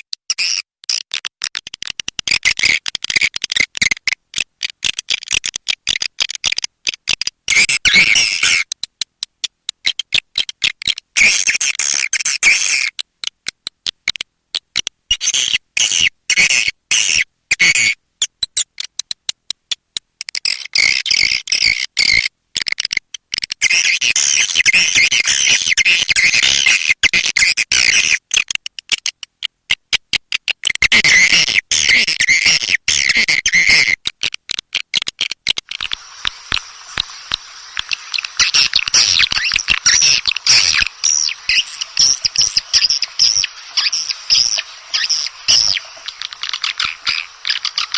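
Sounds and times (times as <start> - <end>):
swiftlet twittering calls: 7.5 - 8.7, 23.7 - 28.2, 35.7 - 47.9.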